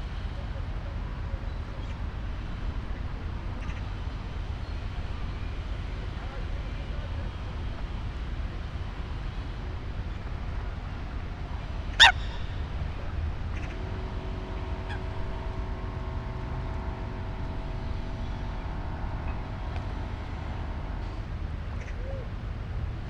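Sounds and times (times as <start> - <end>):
distant traffic rumble: 0.0 - 23.0
hum of several tones: 10.3 - 22.7.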